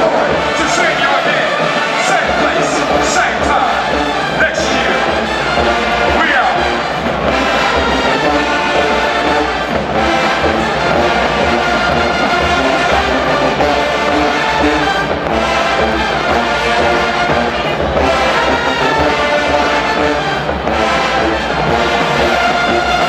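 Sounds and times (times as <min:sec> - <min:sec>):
brass band sustained chords: 0:00.0 - 0:23.0.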